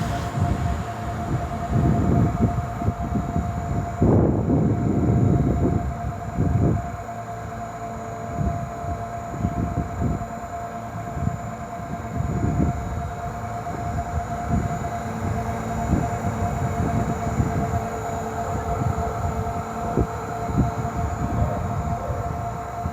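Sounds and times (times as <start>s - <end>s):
electric fan motor whining: 0.0s - 22.9s.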